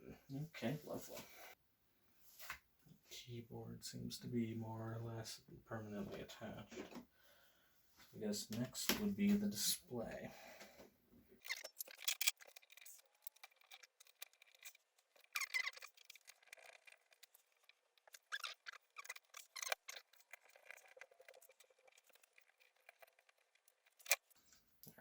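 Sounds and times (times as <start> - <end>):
plastic parts clicking and scraping: 11.4 - 25.0.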